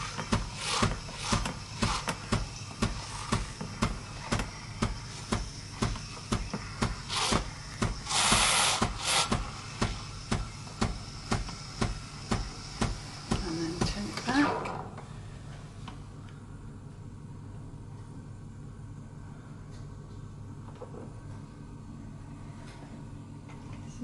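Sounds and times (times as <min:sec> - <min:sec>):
espresso machine pulsing tick: 0:00.0 - 0:14.3
steam hissing: 0:00.0 - 0:14.3.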